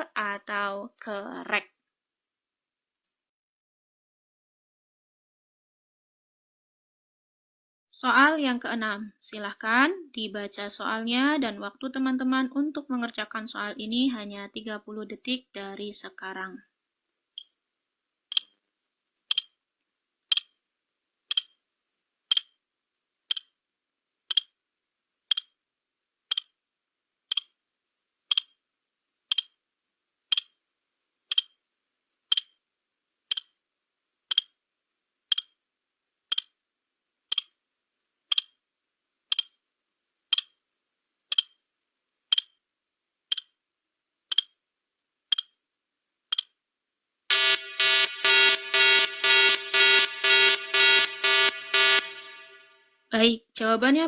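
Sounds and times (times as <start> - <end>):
countdown timer ticking: 21.3 - 21.5, 29.3 - 29.5, 30.3 - 30.5, 31.3 - 31.5, 33.3 - 33.5, 35.3 - 35.5, 37.3 - 37.5, 38.3 - 38.5, 39.3 - 39.5, 41.3 - 41.5, 44.3 - 44.5, 45.3 - 45.5, 47.3 - 52.8.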